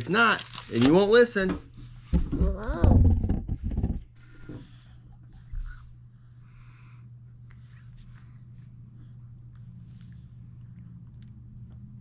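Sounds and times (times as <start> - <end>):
low electrical hum: 0.0 - 12.0
child chewing and rustling: 7.5 - 12.0.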